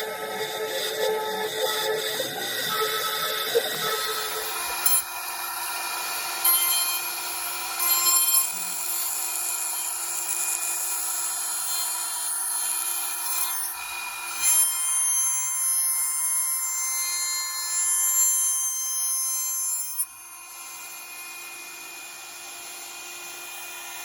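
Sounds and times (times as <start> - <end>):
bit cutting into wood: 0.0 - 16.8
router spindle whining: 0.0 - 24.0.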